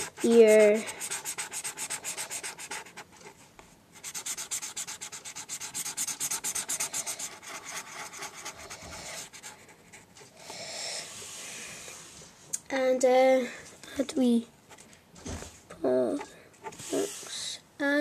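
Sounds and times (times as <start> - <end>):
pen scribbling on paper: 0.0 - 3.1, 4.0 - 10.1.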